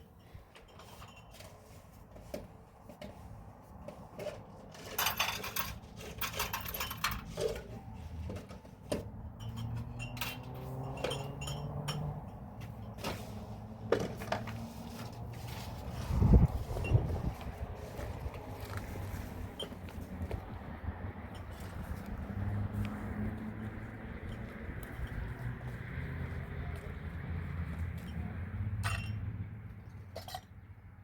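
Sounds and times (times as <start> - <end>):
objects being handled: 0.2 - 20.5.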